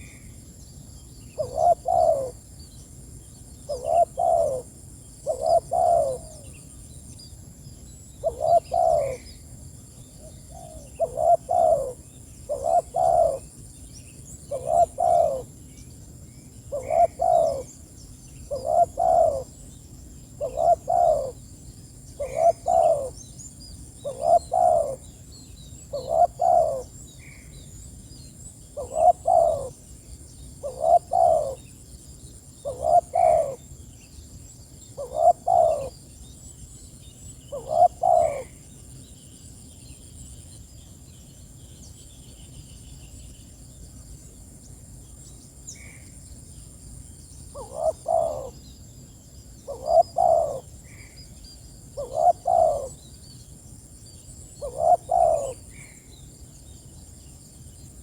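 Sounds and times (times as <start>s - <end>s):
dove cooing: 1.4s - 2.4s, 3.7s - 6.4s, 8.2s - 9.4s, 10.2s - 13.6s, 14.4s - 15.5s, 16.7s - 17.8s, 18.4s - 19.6s, 20.4s - 21.4s, 22.1s - 23.2s, 24.0s - 25.0s, 25.9s - 27.0s, 28.8s - 29.8s, 30.6s - 31.7s, 32.6s - 33.6s, 35.0s - 35.9s, 37.5s - 38.6s, 47.5s - 48.6s, 49.7s - 51.0s, 52.0s - 53.0s, 54.6s - 55.9s.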